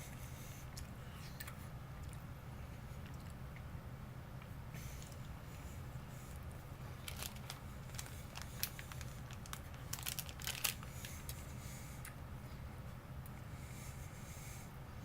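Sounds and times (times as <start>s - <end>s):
plastic packaging crinkling: 7.0s - 11.4s.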